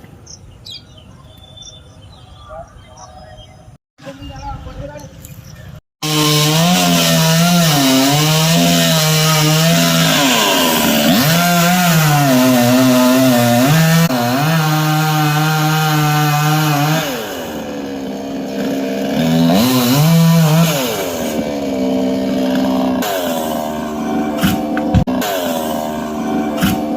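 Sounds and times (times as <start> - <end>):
chainsaw cutting wood: 6.0 - 26.9.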